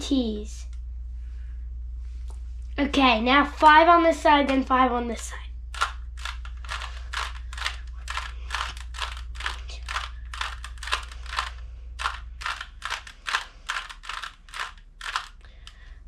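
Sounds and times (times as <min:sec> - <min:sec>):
puzzle cube turning clicks: 0:05.8 - 0:15.8.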